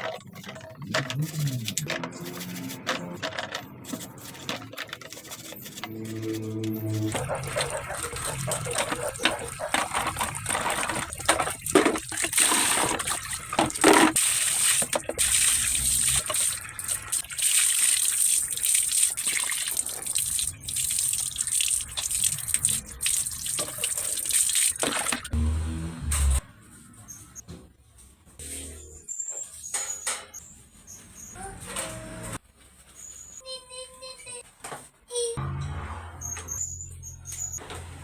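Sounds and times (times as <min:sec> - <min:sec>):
tap water gushing and splashing: 0:07.2 - 0:25.4.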